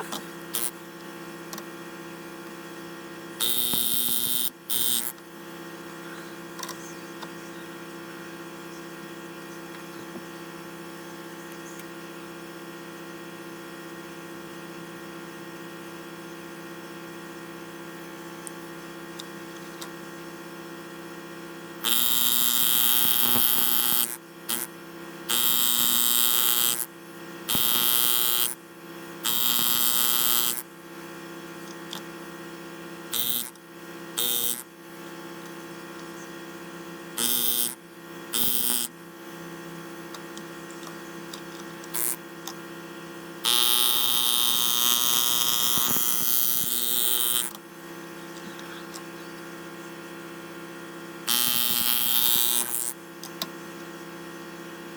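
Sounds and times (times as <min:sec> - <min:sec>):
harsh hissy cutting bursts: 0:00.0 - 0:00.8, 0:41.9 - 0:42.2
power tool motor humming: 0:00.0 - 0:00.8, 0:03.4 - 0:05.2, 0:21.8 - 0:30.7, 0:33.0 - 0:34.8, 0:37.1 - 0:39.0, 0:41.4 - 0:42.6, 0:43.4 - 0:47.6, 0:51.2 - 0:53.4.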